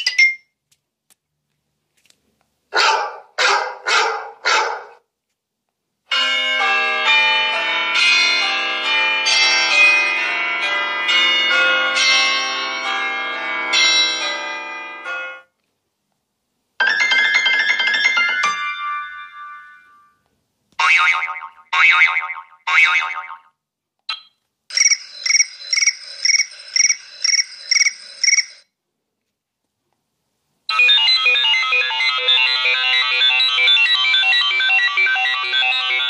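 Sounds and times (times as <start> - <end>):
melodic ringtone: 6.1 - 15.5, 24.1 - 28.7, 30.7 - 36.0.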